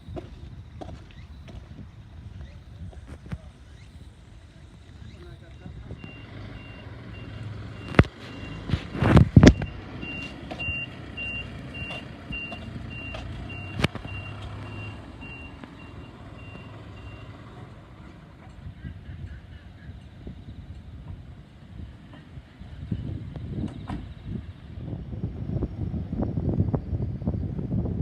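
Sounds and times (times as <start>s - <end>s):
low engine hum: 0.0s - 28.0s
reversing alarm beeping: 5.0s - 17.4s.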